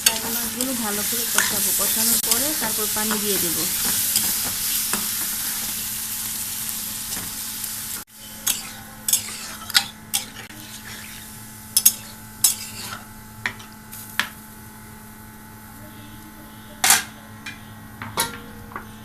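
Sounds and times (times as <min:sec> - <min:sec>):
fish sizzling in oil: 0:00.0 - 0:15.7
spatula scraping a pan: 0:08.2 - 0:13.1.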